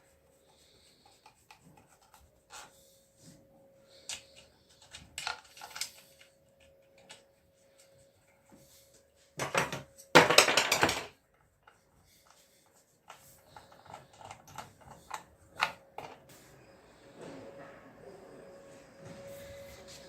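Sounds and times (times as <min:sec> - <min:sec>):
metal parts clattering rattle: 0:09.4 - 0:11.2.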